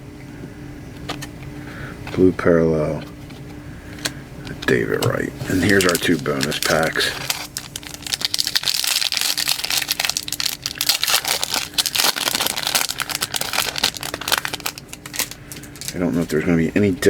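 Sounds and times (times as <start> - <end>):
wrapper crinkling: 4.6 - 16.4.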